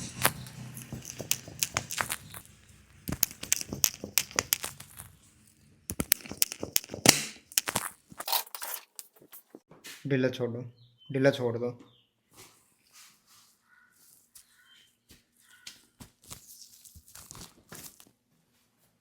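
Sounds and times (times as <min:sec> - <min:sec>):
sharp clicks and slaps: 0:00.0 - 0:05.2, 0:05.9 - 0:08.3
handling noise rustling: 0:00.0 - 0:09.6.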